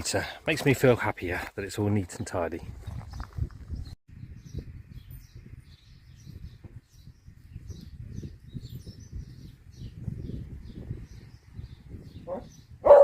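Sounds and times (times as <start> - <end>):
small birds chirping: 3.0 - 13.0.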